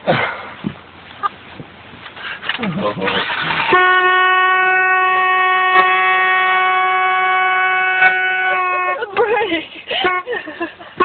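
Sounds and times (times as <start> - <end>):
car horn steady note: 3.6 - 9.3, 10.0 - 10.4.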